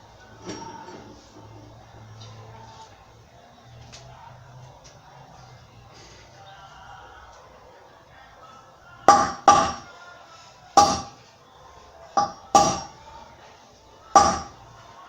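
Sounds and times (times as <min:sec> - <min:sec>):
hammer blows on metal: 0:09.1 - 0:09.9, 0:10.8 - 0:11.2, 0:12.2 - 0:13.0, 0:14.2 - 0:14.6.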